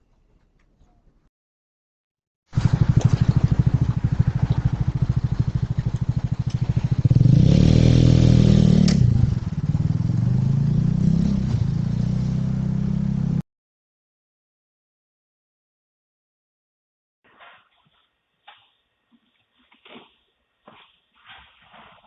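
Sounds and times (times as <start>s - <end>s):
vehicle engine revving: 2.6s - 13.4s.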